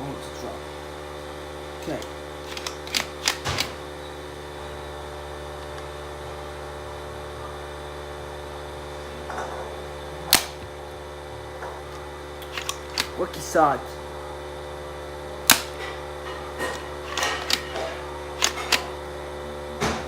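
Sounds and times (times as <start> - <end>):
electric hum: 0.0 - 20.0
loud plastic snap: 2.0 - 3.8, 10.3 - 10.8, 12.4 - 13.2, 15.4 - 16.0, 16.6 - 18.9
plastic toy blaster clicks: 2.4 - 3.8, 12.4 - 13.2, 15.5 - 15.8, 17.1 - 17.8, 18.4 - 18.9.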